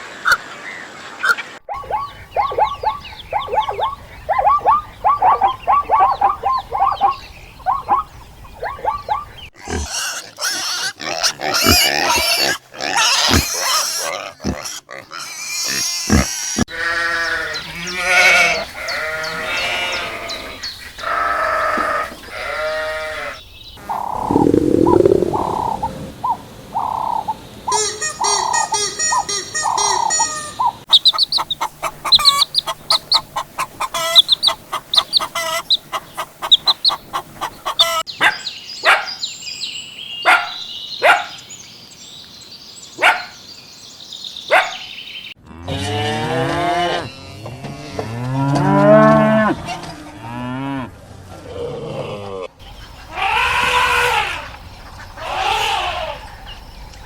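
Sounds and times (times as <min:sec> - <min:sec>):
sharp animal calls: 0:01.7 - 0:39.0, 0:52.6 - 0:56.5
high hiss: 0:24.1 - 0:26.2
drawn-out animal calls: 0:29.3 - 0:38.1, 0:52.7 - 0:56.4
rapid repeated chirps: 0:30.9 - 0:37.0.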